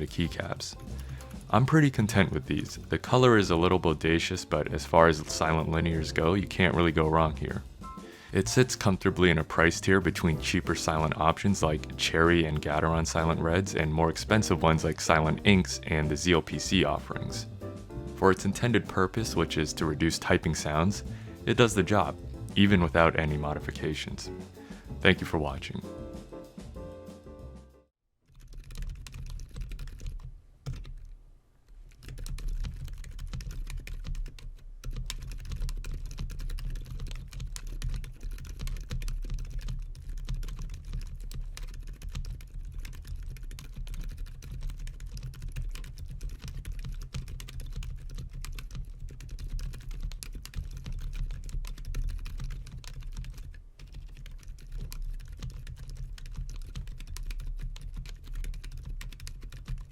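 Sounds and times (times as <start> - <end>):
muted mechanical keyboard typing: 8.5 - 17.4, 28.3 - 31.1, 31.7 - 59.9.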